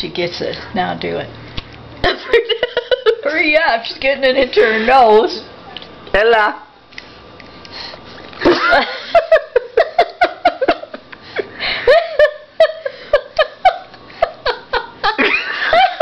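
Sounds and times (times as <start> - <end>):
woman laughing: 2.0 - 3.4, 8.4 - 16.0.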